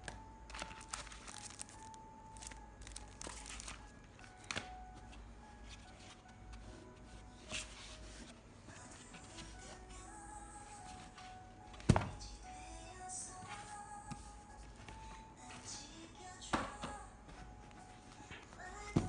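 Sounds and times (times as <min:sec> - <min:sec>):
quiet music: 0:00.0 - 0:19.0
packaging crinkling: 0:00.5 - 0:04.8.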